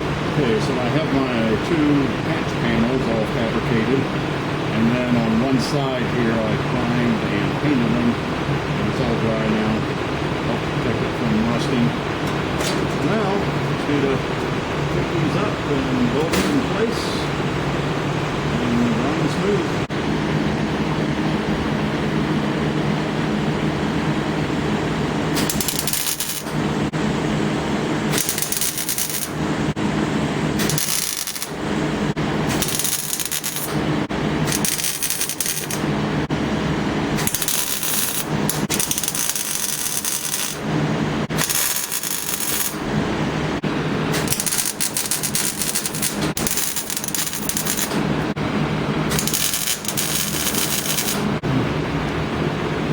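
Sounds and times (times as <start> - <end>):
steady hum: 0.0 - 52.9
welding arc noise: 25.1 - 51.4.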